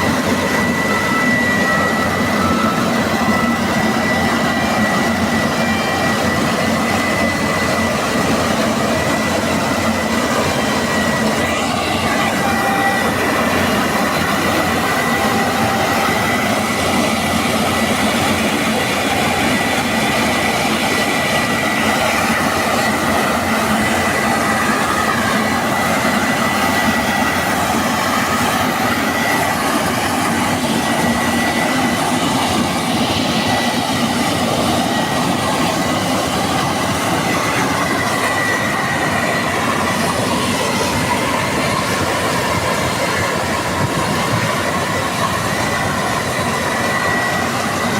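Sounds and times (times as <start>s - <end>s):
combine harvester running: 0.0s - 47.9s
high mechanical whine: 0.0s - 47.9s.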